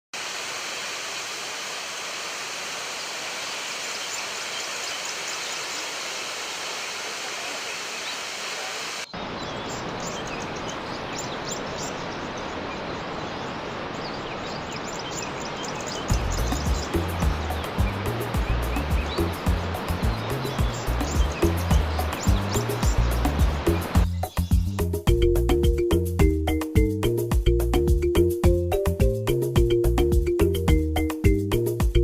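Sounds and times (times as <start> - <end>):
running water rushing: 0.2 - 24.1.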